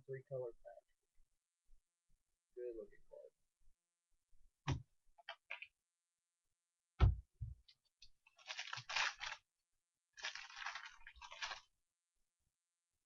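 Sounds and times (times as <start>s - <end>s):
dull thump: 7.0s - 7.6s
foil wrapper crinkling and tearing: 8.3s - 9.4s, 10.2s - 11.7s.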